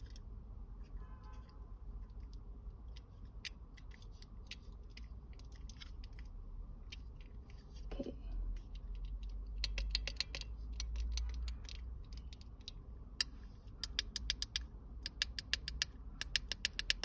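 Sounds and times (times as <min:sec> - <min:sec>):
plastic fidget buttons clicking: 0:09.2 - 0:17.0.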